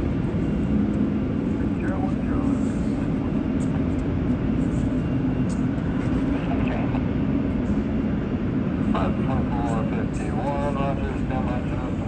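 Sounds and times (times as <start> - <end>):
jet engines rumbling: 0.0 - 12.0.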